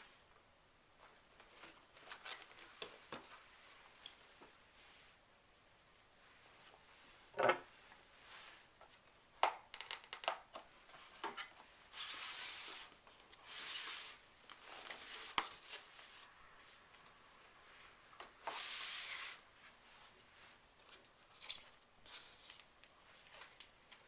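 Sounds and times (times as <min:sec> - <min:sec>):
packaging rustling: 0:01.4 - 0:03.4.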